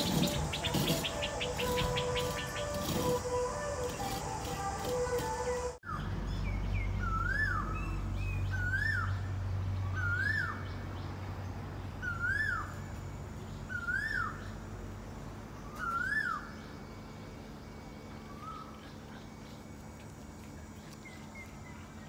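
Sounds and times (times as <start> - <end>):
bird whistling call: 0.0 - 4.6, 7.0 - 9.2, 13.7 - 14.4, 15.6 - 16.6.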